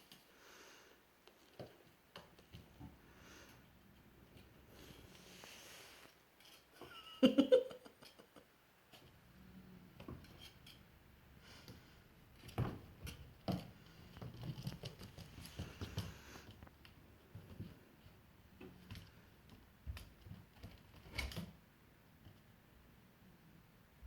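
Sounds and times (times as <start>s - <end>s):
dog and cat scuffling: 12.6s - 21.1s.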